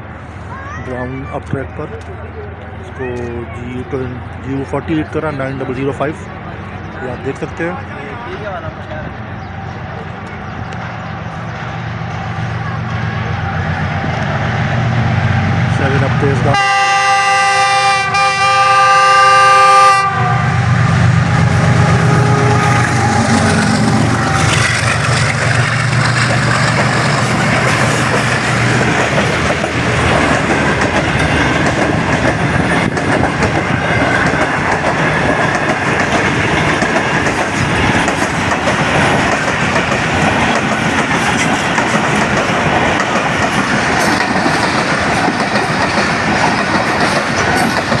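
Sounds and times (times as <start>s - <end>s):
train wheels rumbling on rails: 0.0s - 48.0s
locomotive low drone: 18.1s - 48.0s
clickety-clack over rail joints: 21.4s - 48.0s.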